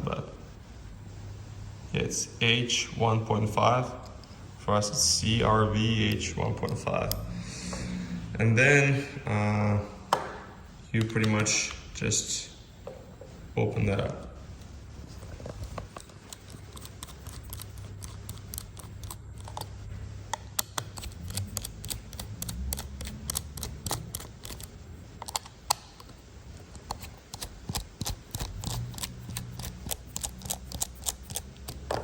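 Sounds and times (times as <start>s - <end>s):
screwdriver clicks and ticks: 20.6s - 26.1s.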